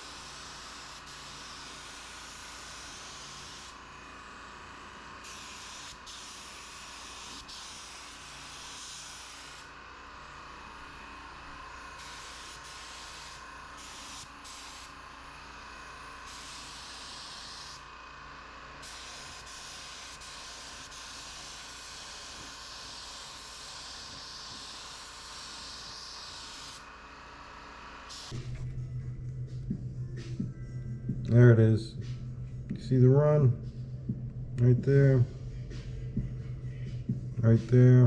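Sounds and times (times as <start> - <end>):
spray gun hissing: 0.0 - 11.2, 11.8 - 15.0, 16.2 - 17.8, 18.8 - 26.9, 28.0 - 28.4.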